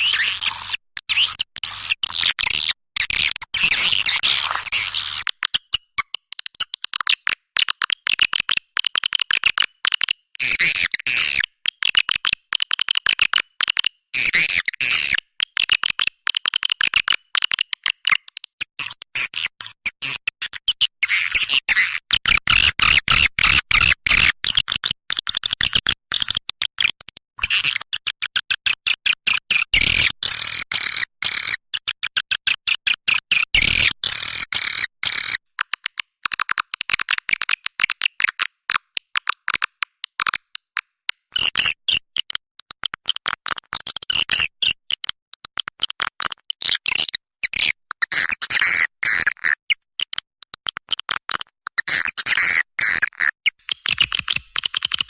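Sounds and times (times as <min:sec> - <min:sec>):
swiftlet twittering and chirping: 0:53.6 - 0:55.0.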